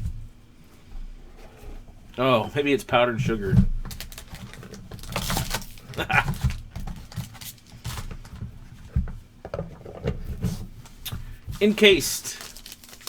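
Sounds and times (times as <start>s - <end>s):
packaging rustling and crinkling: 3.2s - 13.0s.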